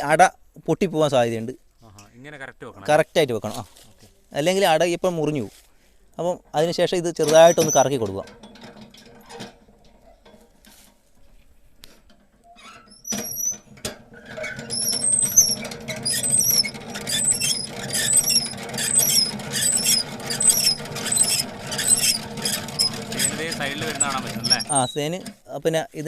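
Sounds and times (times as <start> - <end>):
extractor drum rumbling: 6.5 - 25.4
repeating squeal: 14.7 - 25.0.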